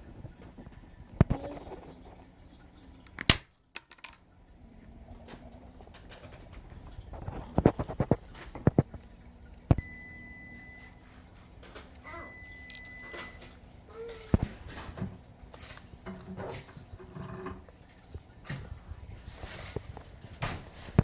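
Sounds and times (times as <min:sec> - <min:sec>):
hard plastic clicking and snapping: 0:03.1 - 0:04.2
faint high tone: 0:12.0 - 0:14.4.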